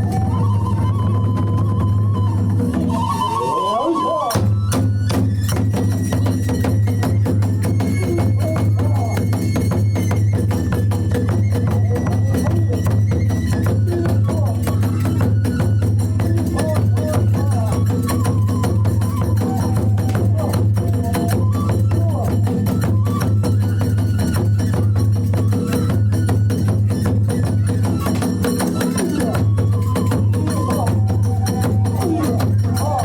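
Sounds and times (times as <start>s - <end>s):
bamboo flute melody: 0.0s - 33.0s
fast drumming: 4.3s - 33.0s
hand cymbals clashing: 5.3s - 11.1s, 24.1s - 33.0s.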